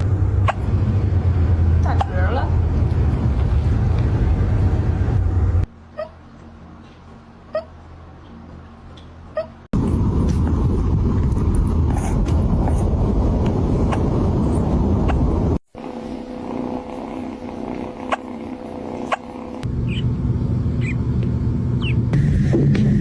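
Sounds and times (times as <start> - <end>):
loud low rumble: 0.0 - 5.7, 9.8 - 15.6, 19.6 - 23.0
kitten hiccupping: 15.8 - 19.6.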